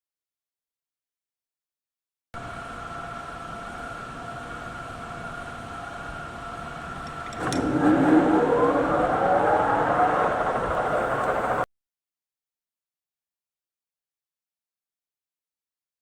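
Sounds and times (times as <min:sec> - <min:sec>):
metal lathe whining: 0:06.3 - 0:11.6
lathe click: 0:07.0 - 0:11.6
squealing tones: 0:07.4 - 0:11.6.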